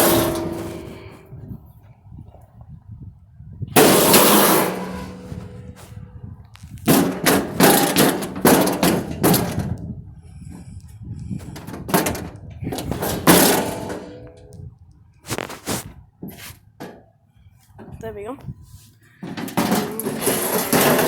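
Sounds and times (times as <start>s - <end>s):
sledgehammer banging on metal: 0.0s - 1.2s, 3.8s - 5.8s, 6.9s - 9.8s, 11.9s - 14.2s, 19.3s - 21.0s.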